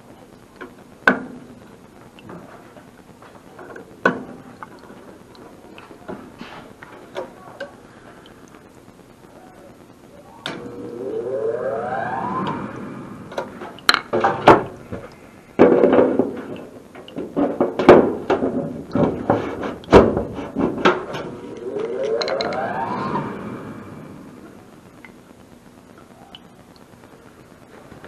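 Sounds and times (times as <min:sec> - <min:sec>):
sharp knocks and clattering clicks: 0:13.9 - 0:21.3.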